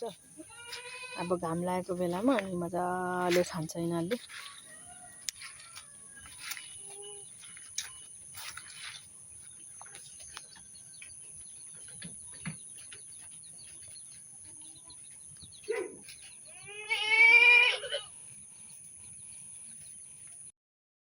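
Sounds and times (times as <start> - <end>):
goats crunching leaves and stems: 2.0 - 11.2.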